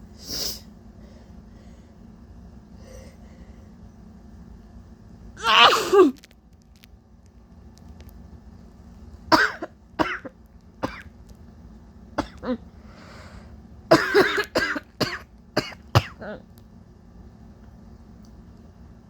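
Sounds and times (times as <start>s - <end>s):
woman coughing: 5.4s - 6.2s, 9.3s - 11.0s, 12.2s - 12.7s, 13.9s - 16.5s
breathy breath: 12.8s - 13.6s.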